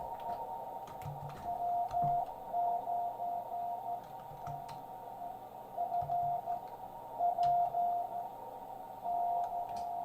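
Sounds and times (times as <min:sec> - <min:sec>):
radio receiver hiss: 0:00.0 - 0:10.0
morse code beeps: 0:01.4 - 0:04.1, 0:05.8 - 0:06.6, 0:07.2 - 0:08.3, 0:09.1 - 0:10.0.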